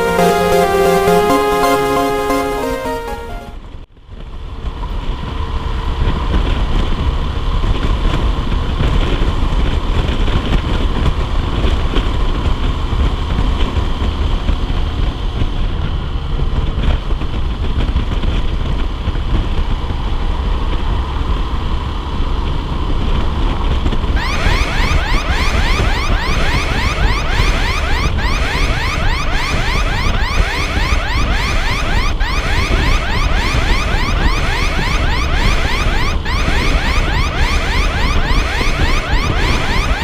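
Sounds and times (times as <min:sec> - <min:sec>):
background music: 0:00.0 - 0:03.6.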